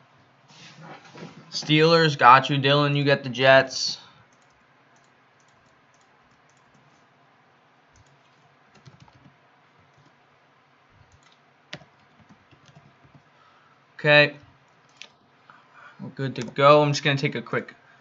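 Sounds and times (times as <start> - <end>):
computer keyboard typing: 4.3 - 7.0, 8.0 - 10.2, 11.0 - 13.3.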